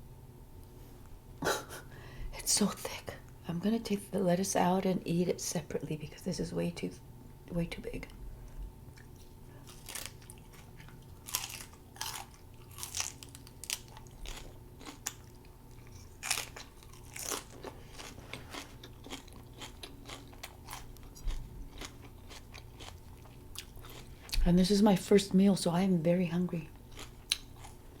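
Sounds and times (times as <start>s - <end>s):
crunchy chewing: 8.9s - 24.4s, 26.7s - 28.0s.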